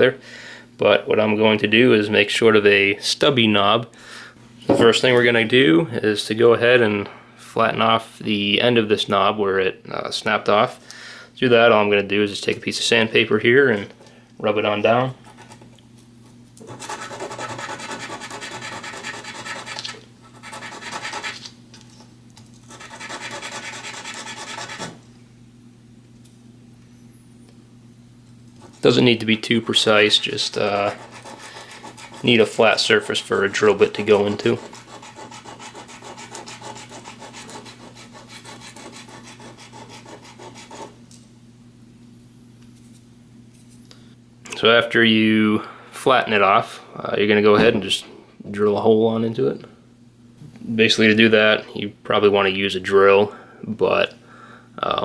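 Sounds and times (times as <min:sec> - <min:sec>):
faint steady hum: 0:00.0 - 0:55.0
plastic scratching on sandpaper: 0:16.7 - 0:21.5, 0:22.7 - 0:24.9, 0:29.6 - 0:41.0.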